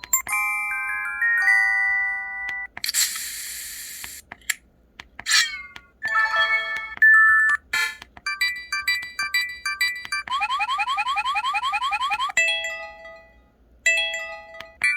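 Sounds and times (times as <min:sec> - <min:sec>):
electronic phone chimes and jingles: 0:00.0 - 0:02.7.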